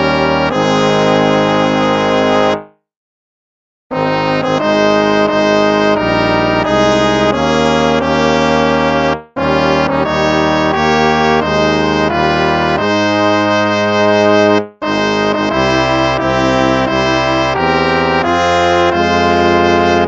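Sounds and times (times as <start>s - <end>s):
instrumental hymn music: 0.0s - 2.8s, 3.9s - 20.0s.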